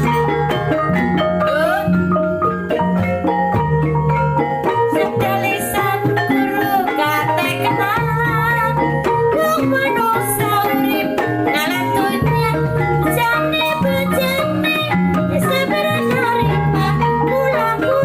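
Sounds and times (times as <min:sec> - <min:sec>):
wavering melodic line: 0:00.0 - 0:18.0.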